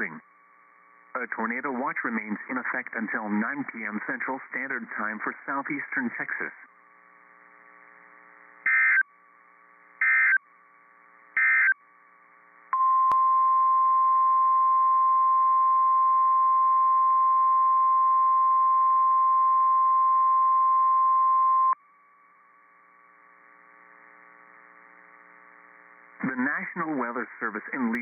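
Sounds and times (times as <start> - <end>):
buzzy digital data bursts: 8.6 - 9.0.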